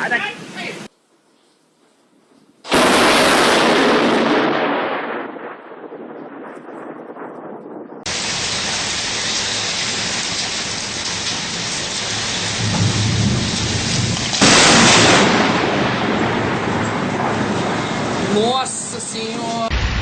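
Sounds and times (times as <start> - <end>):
heavy rain: 2.7 - 6.0, 8.1 - 18.8
loud thunderclap: 2.7 - 18.4
rolling thunder: 2.7 - 18.4.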